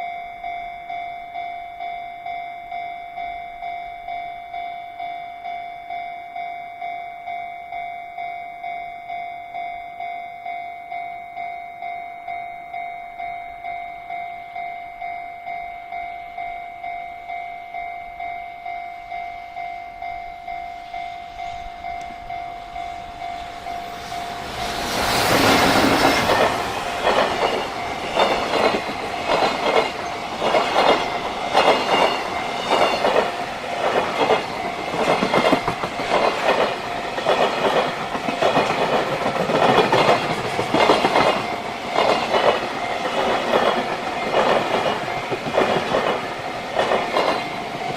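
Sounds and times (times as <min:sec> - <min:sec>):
freight train passing: 0:00.0 - 0:47.9
level crossing warning bell: 0:00.0 - 0:47.9
wheels clattering over rail joints: 0:24.4 - 0:47.9.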